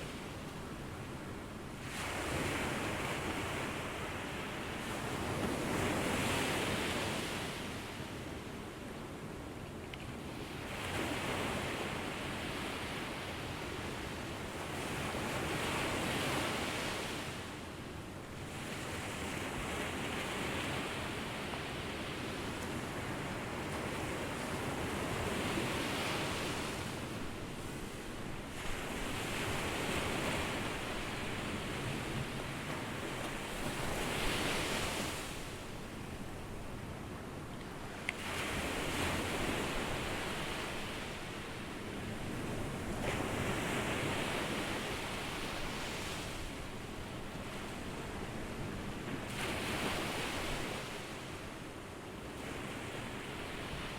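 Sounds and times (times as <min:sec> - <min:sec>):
ocean waves breaking on beach: 0:18.5 - 0:53.9.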